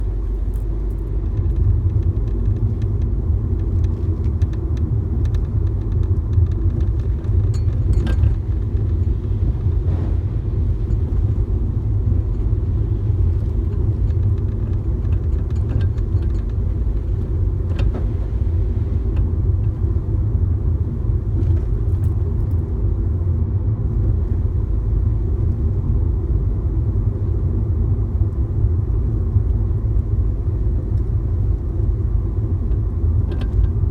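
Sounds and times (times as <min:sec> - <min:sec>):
light metallic ticks and rattles: 0:00.0 - 0:09.9, 0:10.6 - 0:22.9, 0:30.8 - 0:33.9
car engine rumbling: 0:00.0 - 0:33.9.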